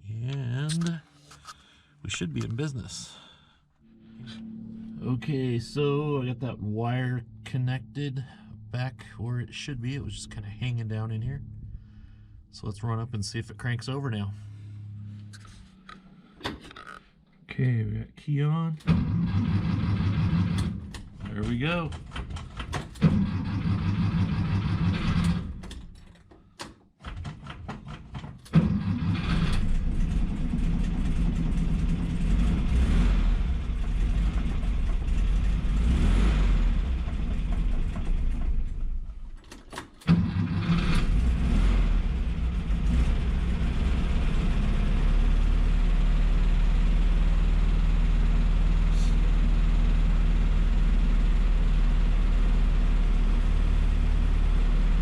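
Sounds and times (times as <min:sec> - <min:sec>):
engine starting and idling unevenly: 0:01.3 - 0:08.9, 0:18.8 - 0:26.3, 0:27.2 - 0:55.0.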